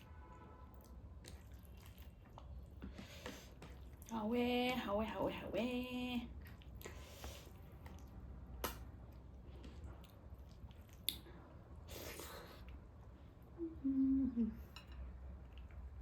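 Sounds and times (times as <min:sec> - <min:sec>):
person chewing: 0:00.8 - 0:04.1, 0:06.3 - 0:12.9
sharp mouth clicks: 0:08.6 - 0:08.9
low voiced hum: 0:11.2 - 0:14.9.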